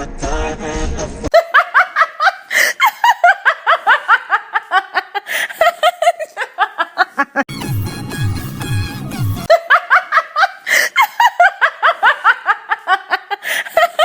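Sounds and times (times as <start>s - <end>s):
music with heavy beat: 7.5s - 9.5s.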